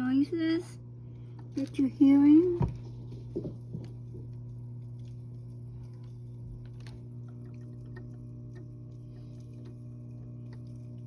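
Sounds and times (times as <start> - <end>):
aquarium filter pump humming: 0.0 - 11.0
faint irregular ticks: 4.9 - 11.0.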